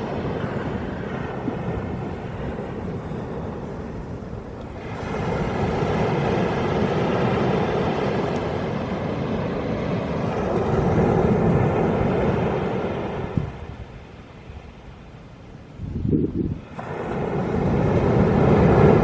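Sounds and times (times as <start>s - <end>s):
waves breaking on pebble shore: 4.8s - 13.7s, 16.6s - 19.0s.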